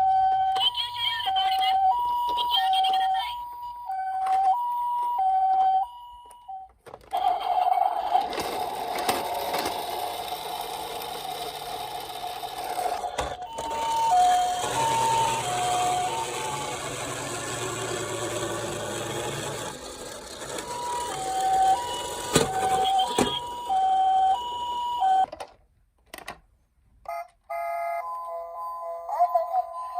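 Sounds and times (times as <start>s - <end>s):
two-tone siren: 0.0s - 8.2s, 13.4s - 19.8s, 20.4s - 25.3s, 27.1s - 29.9s.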